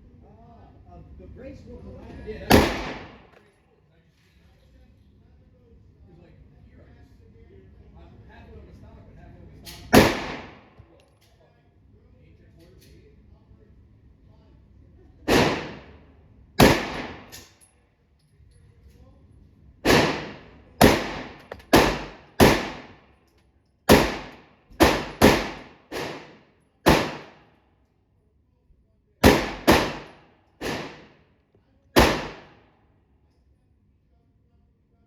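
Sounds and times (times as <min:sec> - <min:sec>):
pistol shots: 0:02.5 - 0:03.4, 0:09.9 - 0:10.8, 0:15.3 - 0:16.0, 0:16.6 - 0:17.5, 0:19.8 - 0:23.0, 0:23.9 - 0:27.4, 0:29.2 - 0:31.2, 0:32.0 - 0:32.6.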